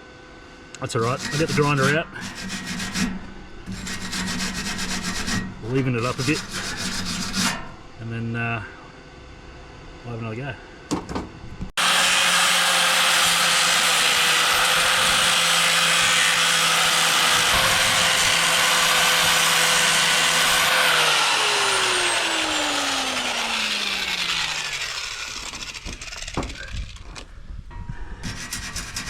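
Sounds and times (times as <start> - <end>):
angle grinder grinding steel: 0.9 - 8.0, 11.8 - 27.2, 28.2 - 29.0
grinder disc spinning down: 11.8 - 27.2.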